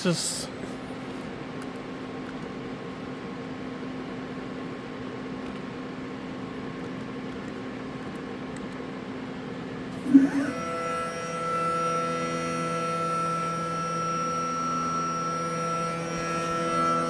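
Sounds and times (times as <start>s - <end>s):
electric motor hum: 9.9s - 17.0s
motor whine: 9.9s - 17.0s.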